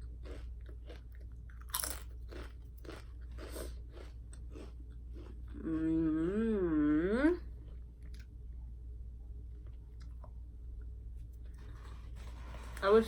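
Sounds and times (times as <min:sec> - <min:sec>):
chewing crunchy food: 0:00.0 - 0:05.9
person humming: 0:05.6 - 0:07.4.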